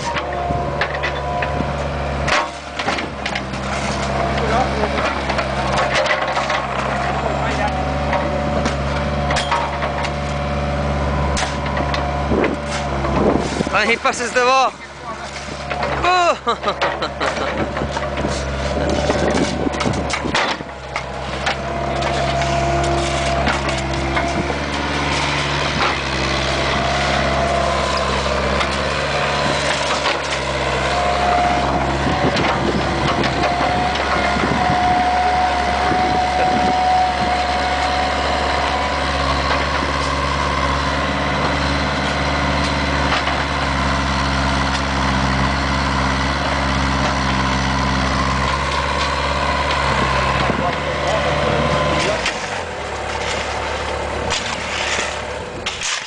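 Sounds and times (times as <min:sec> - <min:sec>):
hydraulic whine: 0:00.0 - 0:16.1, 0:16.7 - 0:56.0
excavator diesel engine running: 0:00.0 - 0:56.0
asphalt breaking: 0:02.2 - 0:10.3, 0:51.9 - 0:56.0.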